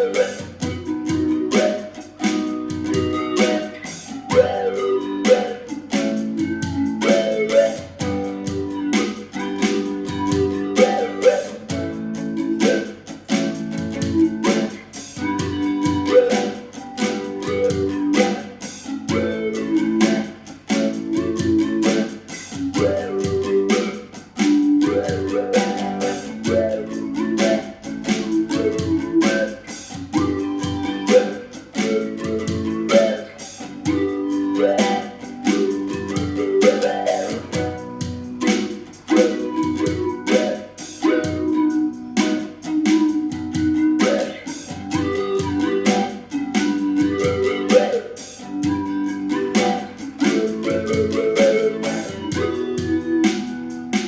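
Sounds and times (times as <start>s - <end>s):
guitar chords strummed: 0.0s - 54.0s.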